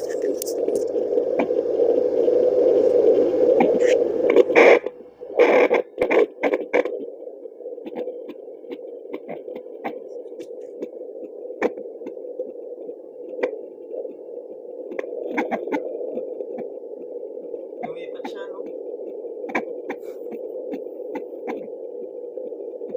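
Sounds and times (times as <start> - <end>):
doppler speaker hiss: 0.0 - 7.8, 8.4 - 22.6
faint clicks: 2.2 - 22.9.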